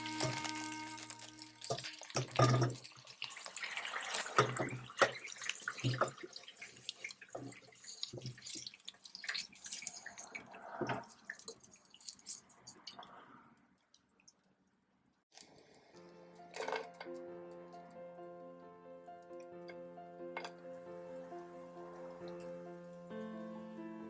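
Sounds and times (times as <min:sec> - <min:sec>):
water splashing in a sink: 0:00.0 - 0:13.3
knocks and clatters of handling: 0:01.6 - 0:03.4.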